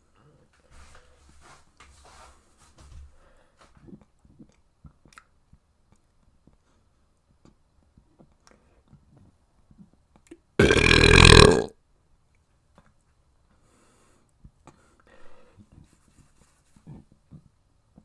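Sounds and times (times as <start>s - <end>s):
person belching: 10.6s - 11.7s.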